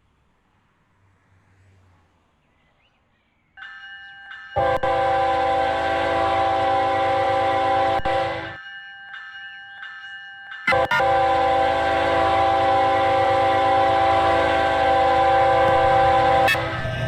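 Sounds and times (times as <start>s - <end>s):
locomotive air horn chord: 4.6s - 8.6s, 10.7s - 17.0s.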